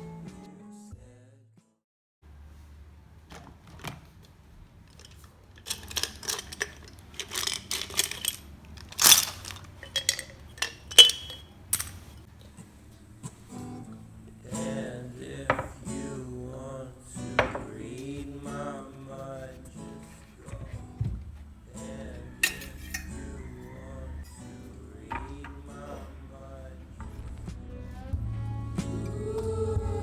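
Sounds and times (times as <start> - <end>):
objects clicking and knocking: 4.8 - 12.3, 22.4 - 23.2.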